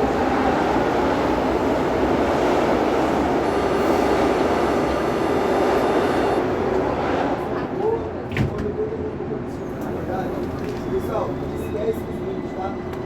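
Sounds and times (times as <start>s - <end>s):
high whine of traction motors: 2.7s - 6.6s.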